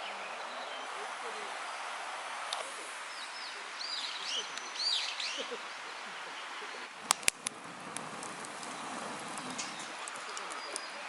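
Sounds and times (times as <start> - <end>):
birds chirping: 0.0 - 11.0
outdoor hiss: 0.0 - 11.0
loud sharp pops: 7.0 - 10.9.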